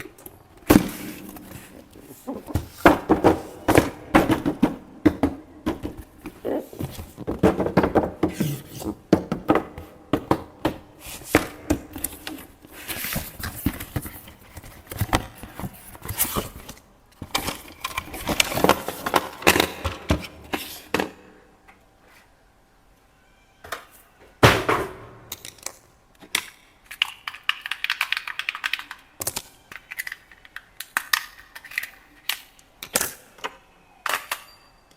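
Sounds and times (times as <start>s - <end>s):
plastic parts clicking and knocking: 24.6s - 34.5s.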